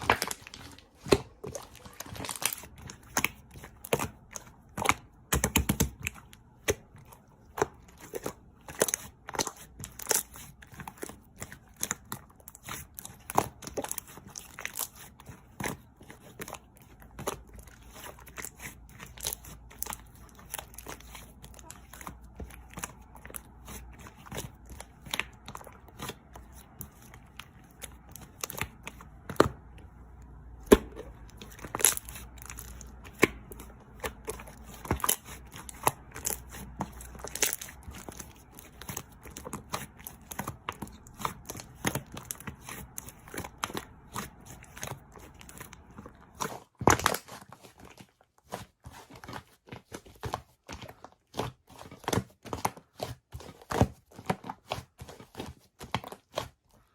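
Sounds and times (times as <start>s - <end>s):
slime crackling and popping: 0.0s - 6.8s, 7.6s - 15.1s, 30.6s - 45.8s.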